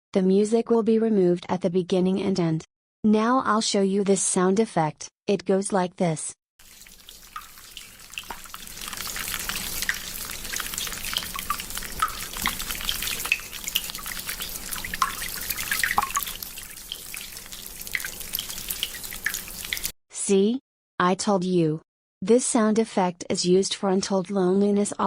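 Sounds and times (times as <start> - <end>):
liquid trickling into toilet water: 6.6 - 19.9
small drips: 6.6 - 20.0.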